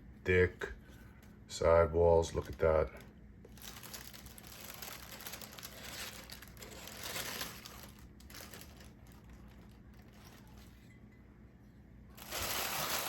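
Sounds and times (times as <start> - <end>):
packaging crinkling: 2.3 - 10.9, 12.1 - 13.0.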